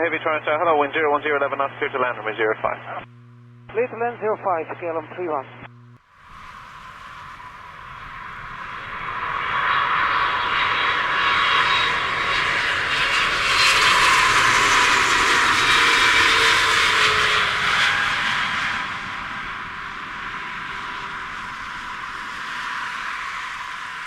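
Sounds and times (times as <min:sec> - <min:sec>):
jet engine whine: 0:00.0 - 0:24.0
jet airliner passing close: 0:06.2 - 0:24.0.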